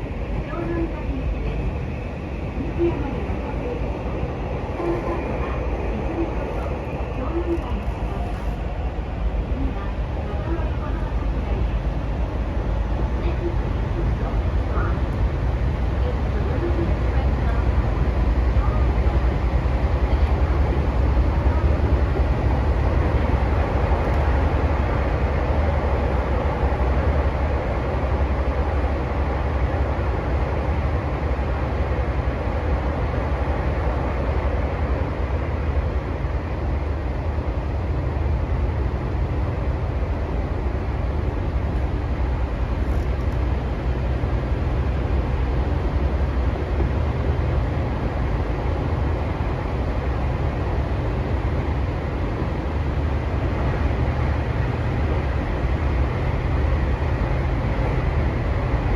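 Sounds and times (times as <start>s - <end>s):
train wheels rumbling on rail: 0.0s - 58.9s.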